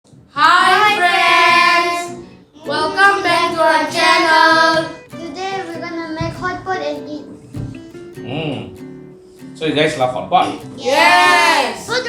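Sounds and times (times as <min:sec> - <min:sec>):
children singing: 0:00.3 - 0:05.0.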